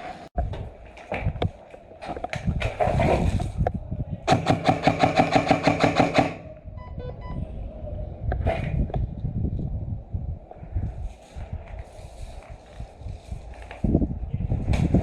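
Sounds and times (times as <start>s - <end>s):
airsoft gun full-auto burst: 4.3s - 6.4s
faint short beeps: 6.6s - 7.5s.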